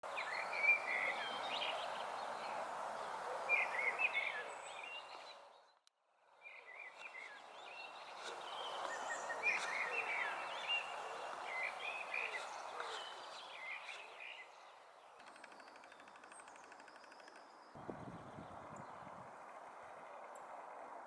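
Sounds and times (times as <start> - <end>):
steady outdoor hiss: 0.0 - 21.0
small birds chirping: 0.1 - 19.2.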